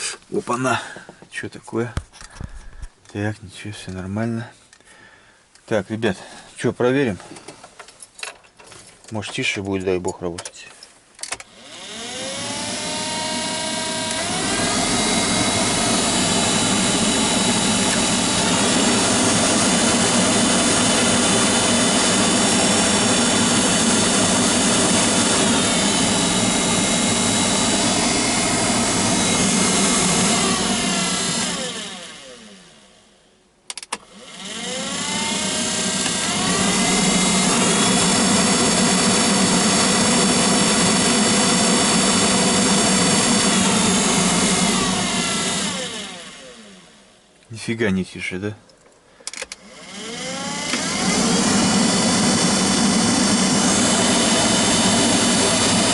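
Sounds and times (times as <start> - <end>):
blower motor whining: 11.4 - 33.2, 33.9 - 47.2, 49.5 - 55.9
click: 33.7 - 34.0.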